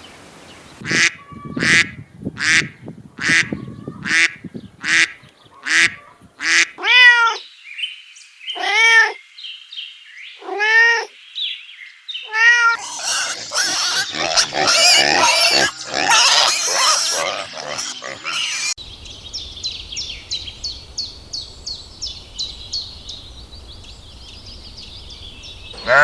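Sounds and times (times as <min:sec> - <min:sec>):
meow-like animal calls: 0:12.3 - 0:18.8.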